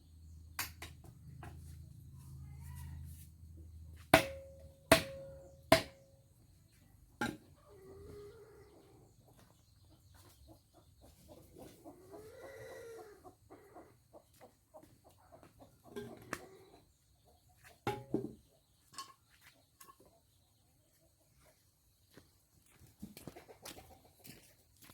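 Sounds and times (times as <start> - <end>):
sharp knocks: 4.2 - 6.0
chickens clucking: 6.7 - 21.7, 22.7 - 24.9.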